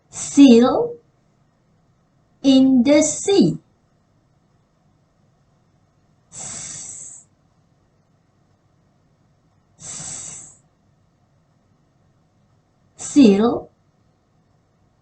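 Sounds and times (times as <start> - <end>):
person hissing sss sound: 6.3 - 7.3, 9.8 - 10.6, 13.0 - 13.4.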